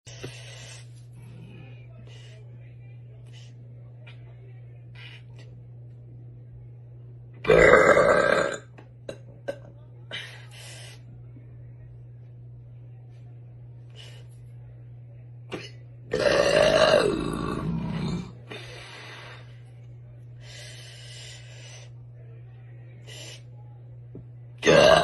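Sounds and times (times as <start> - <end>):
woman burping: 7.4 - 9.7, 15.5 - 18.3, 24.6 - 25.0.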